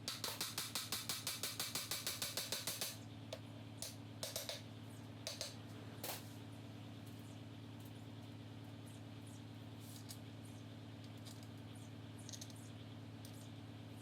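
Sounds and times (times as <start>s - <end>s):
ratchet wrench clicking: 0.0s - 3.0s, 3.8s - 4.6s.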